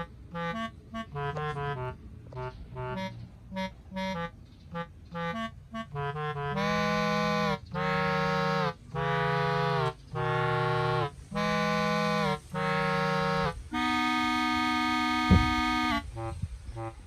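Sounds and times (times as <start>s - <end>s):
brief thump: 15.3s - 15.6s.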